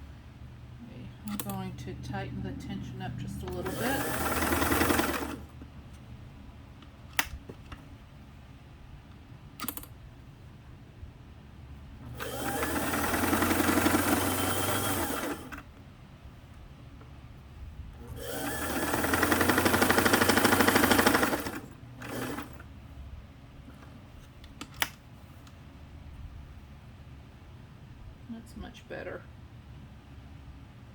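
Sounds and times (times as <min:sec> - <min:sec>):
sewing machine stitching: 0:03.5 - 0:05.5, 0:12.1 - 0:15.6, 0:18.1 - 0:22.6.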